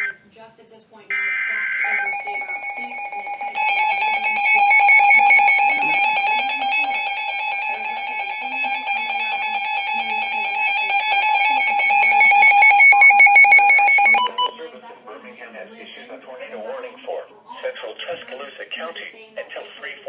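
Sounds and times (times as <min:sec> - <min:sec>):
warbling high tones: 0:01.1 - 0:14.4
two-tone alarm: 0:01.1 - 0:14.6.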